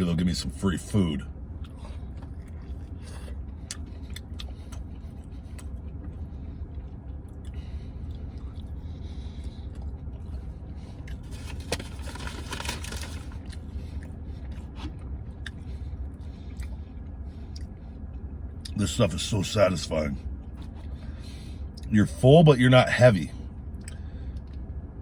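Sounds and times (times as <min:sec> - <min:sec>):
steady low rumble: 0:00.0 - 0:25.0
quiet chewing: 0:01.6 - 0:18.8.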